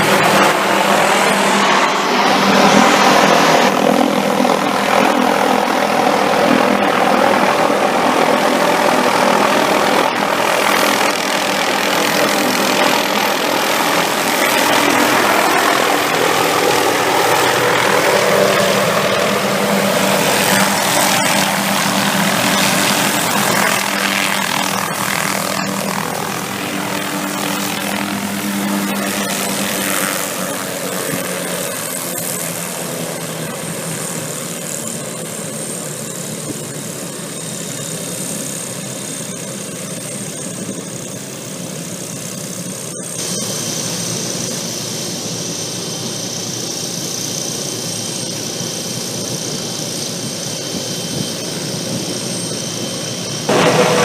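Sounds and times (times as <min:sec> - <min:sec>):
helicopter rotor and engine: 0:00.0 - 0:54.0.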